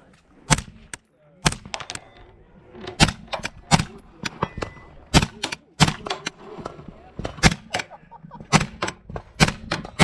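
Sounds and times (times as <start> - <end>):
rifle shots: 7.4 - 7.8, 8.5 - 10.0.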